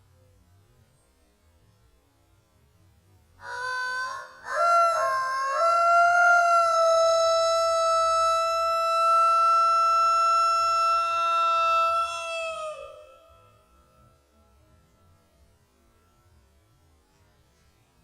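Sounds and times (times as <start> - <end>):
slowed rooster crowing: 3.4 - 13.9.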